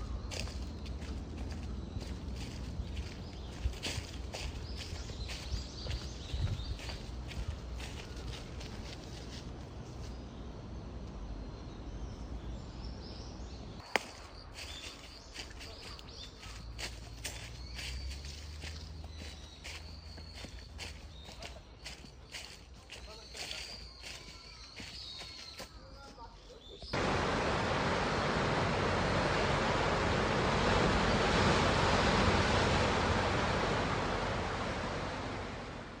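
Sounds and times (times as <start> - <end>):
faint bird chirps: 0.0 - 9.4, 11.3 - 27.0
footsteps crunching through dry leaves: 0.0 - 10.2, 13.9 - 26.7
low rumble: 27.0 - 36.0
ocean surf rushing: 27.0 - 36.0.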